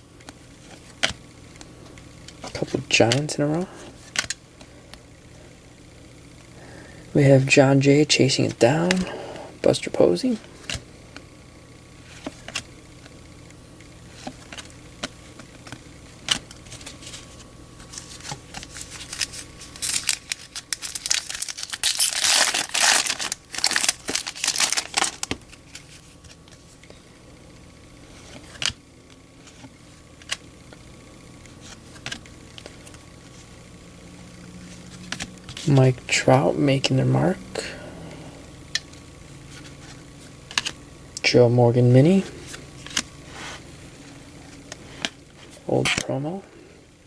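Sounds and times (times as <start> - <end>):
foil wrapper tearing and crinkling: 17.8 - 26.6.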